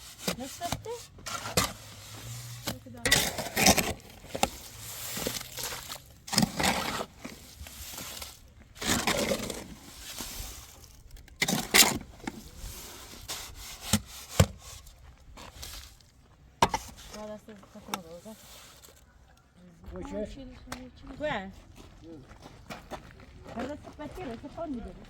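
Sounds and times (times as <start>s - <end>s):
scraping on building materials: 0.0s - 19.2s.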